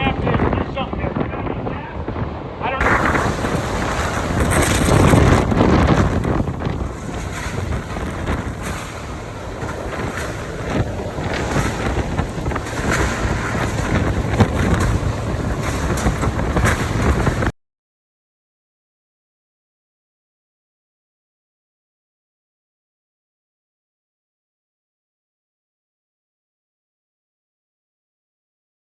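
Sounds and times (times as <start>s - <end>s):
wind buffeting microphone: 0.0s - 17.5s
hurricane winds gusting: 2.0s - 17.5s
sharp cracks: 2.8s - 17.5s.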